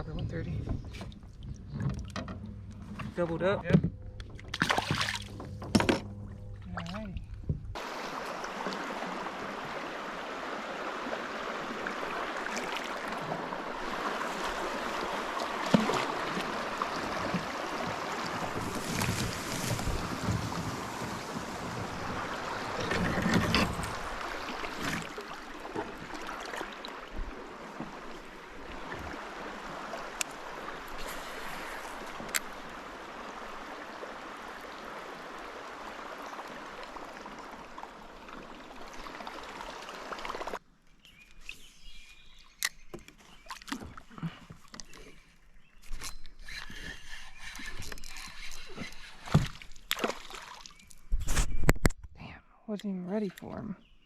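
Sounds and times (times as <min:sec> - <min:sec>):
river water flowing: 0:04.3 - 0:40.6, 0:47.4 - 0:51.0
wind on microphone: 0:17.0 - 0:24.6.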